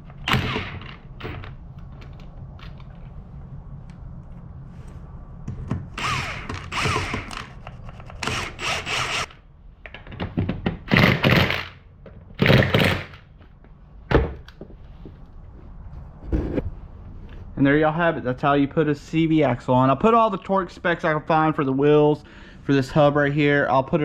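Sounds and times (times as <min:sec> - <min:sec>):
impact wrench bursts: 0:00.2 - 0:01.4, 0:06.0 - 0:09.4, 0:10.9 - 0:11.8.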